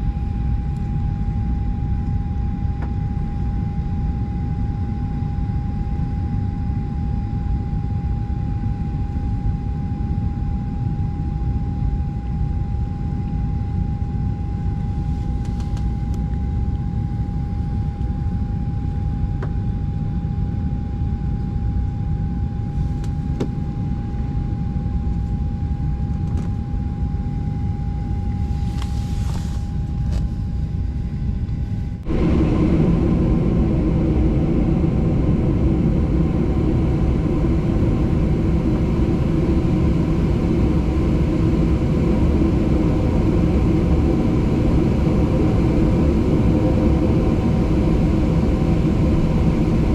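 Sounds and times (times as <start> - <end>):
airplane cabin rumble: 0.0 - 49.9
faint steady whine: 0.0 - 49.9.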